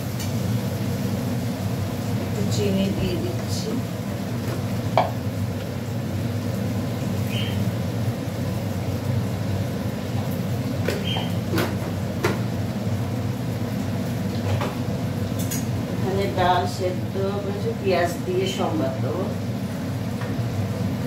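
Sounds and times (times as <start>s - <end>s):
spatula knocking on pan: 4.9s - 5.2s.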